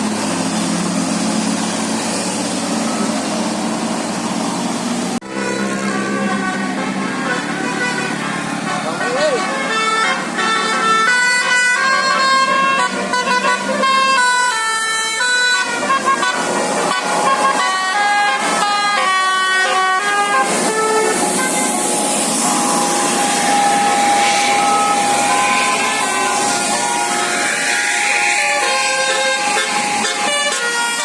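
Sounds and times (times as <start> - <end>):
bus horn playing a melody: 5.2 - 31.0
steady rush of noise: 20.3 - 30.3.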